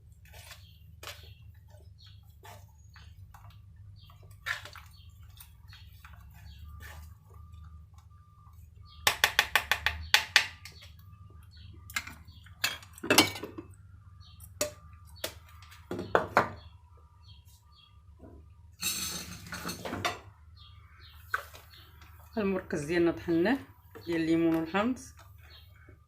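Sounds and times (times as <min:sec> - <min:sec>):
dishes clinking and knocking: 0:11.9 - 0:13.7, 0:18.8 - 0:20.3.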